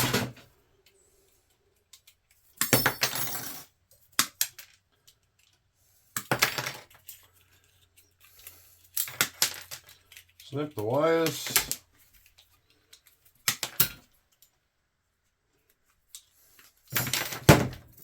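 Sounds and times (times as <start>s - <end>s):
plastic and metal parts clattering: 0.0s - 0.5s, 6.2s - 14.6s, 16.2s - 18.0s.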